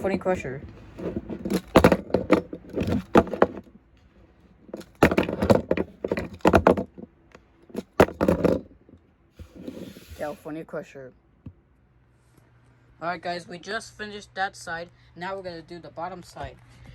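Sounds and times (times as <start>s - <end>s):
toy trucks clattering: 0.0s - 10.3s.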